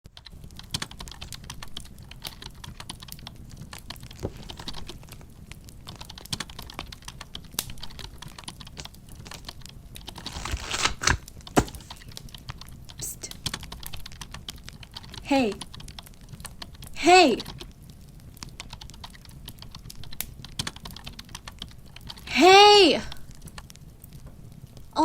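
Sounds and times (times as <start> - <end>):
computer keyboard typing: 0.2 - 4.9, 5.9 - 10.4, 13.4 - 17.7, 18.6 - 22.2.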